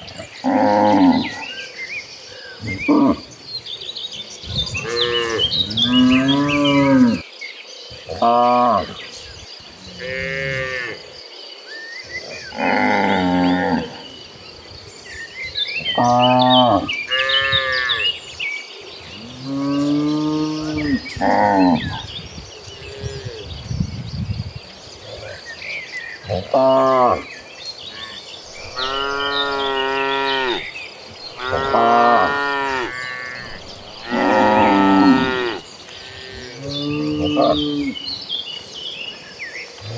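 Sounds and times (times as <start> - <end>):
cattle mooing: 4.7 - 7.2, 9.8 - 11.0, 12.5 - 14.1, 28.0 - 30.7, 31.4 - 38.0.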